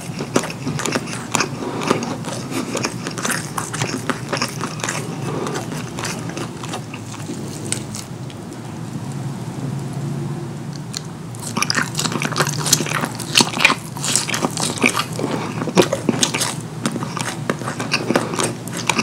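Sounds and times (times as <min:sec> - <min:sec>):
wet chewing of food: 0:00.0 - 0:08.6, 0:10.7 - 0:19.0.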